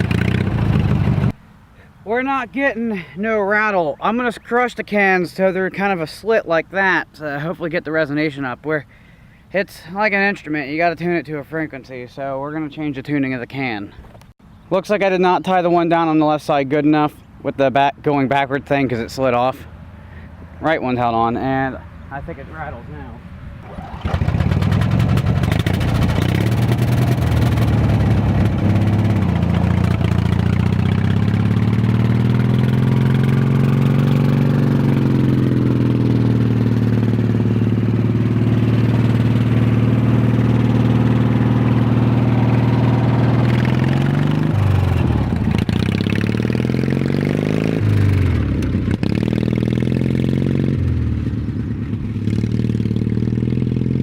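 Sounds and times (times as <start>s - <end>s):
lawn tractor engine revving: 23.6s - 51.1s.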